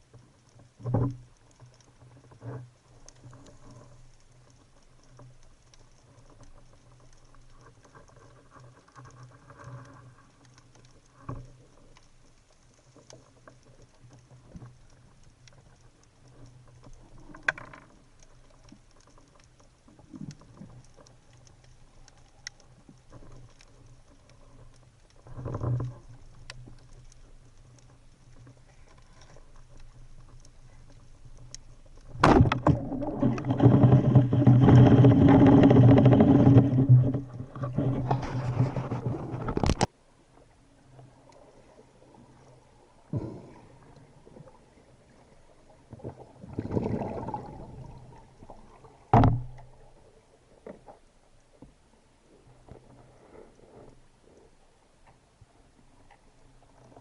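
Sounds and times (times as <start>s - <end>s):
faint underwater crackling: 0.0s - 57.0s
loud rough water noise: 32.2s - 39.9s.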